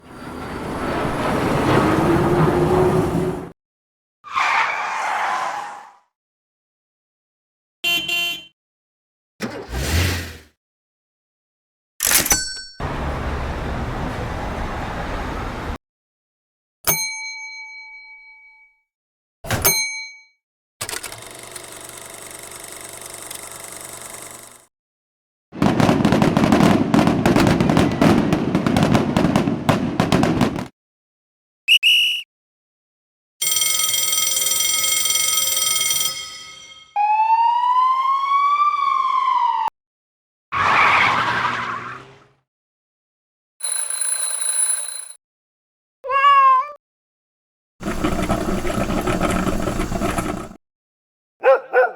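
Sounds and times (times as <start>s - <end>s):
bell ding: 16.9s - 18.7s, 35.8s - 37.0s
siren-like wail: 37.0s - 39.7s.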